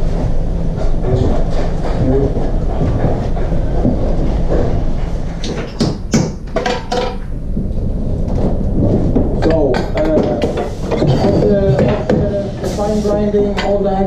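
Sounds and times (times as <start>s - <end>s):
factory machinery rumbling: 0.0s - 14.0s
sharp knocks: 5.4s - 7.2s.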